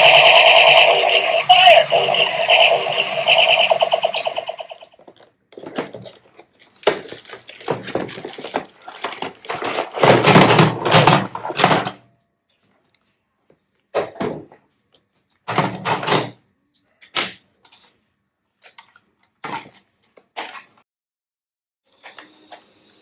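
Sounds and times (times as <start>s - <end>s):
toy packaging scraping and knocking: 4.3s - 12.0s.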